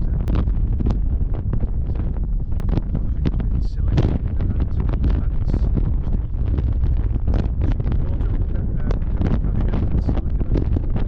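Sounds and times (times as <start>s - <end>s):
wind buffeting microphone: 0.0s - 11.0s.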